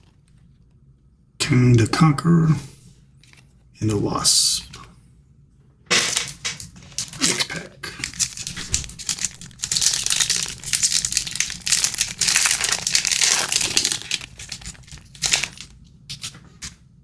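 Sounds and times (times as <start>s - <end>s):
wrapper tearing and crinkling: 6.0s - 16.8s.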